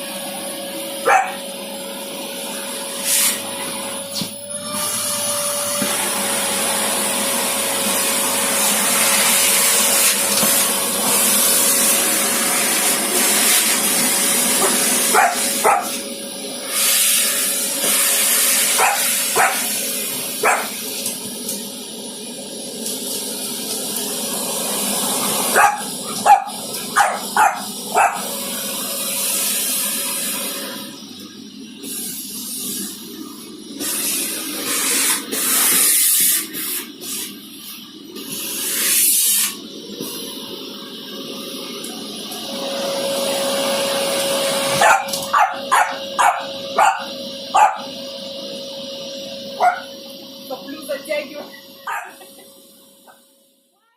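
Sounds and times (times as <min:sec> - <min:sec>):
vacuum cleaner running: 0:00.0 - 0:53.7
dog barking: 0:01.0 - 0:01.4, 0:14.6 - 0:16.0, 0:18.8 - 0:19.8, 0:20.4 - 0:20.8, 0:25.5 - 0:28.3, 0:44.8 - 0:47.9, 0:49.6 - 0:49.9, 0:51.9 - 0:52.3.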